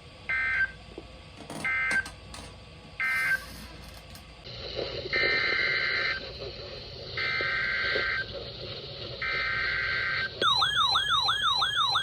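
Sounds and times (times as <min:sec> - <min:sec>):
radio static: 0:04.5 - 0:10.4.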